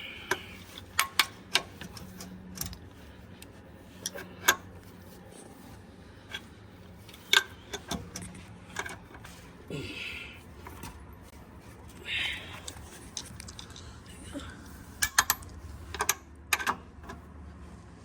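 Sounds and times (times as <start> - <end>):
metallic clicks of tools: 15.0 - 17.2.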